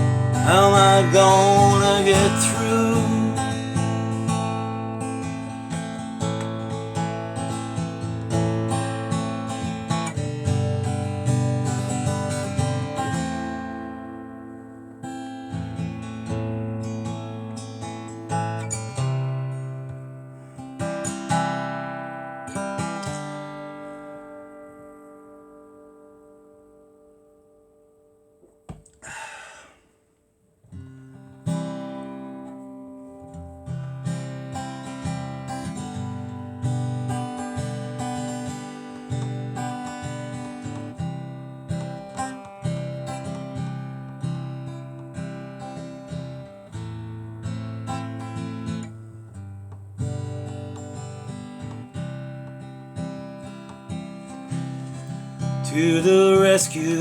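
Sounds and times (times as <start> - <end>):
acoustic guitar strumming chords: 0.0 - 27.6, 30.7 - 57.0.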